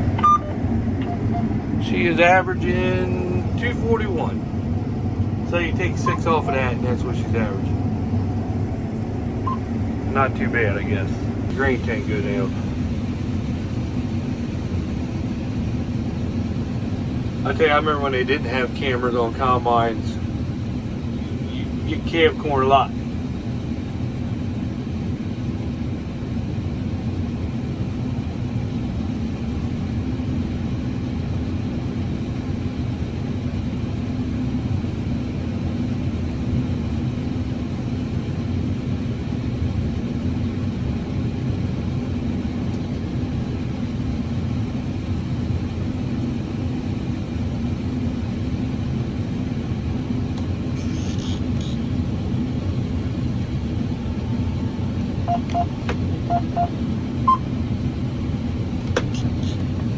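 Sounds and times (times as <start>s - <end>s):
combine harvester droning: 0.0s - 13.0s, 52.8s - 59.9s.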